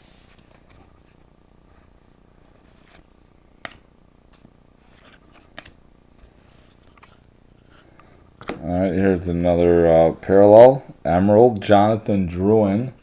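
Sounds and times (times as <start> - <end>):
cards rustling and sliding: 2.4 - 8.6.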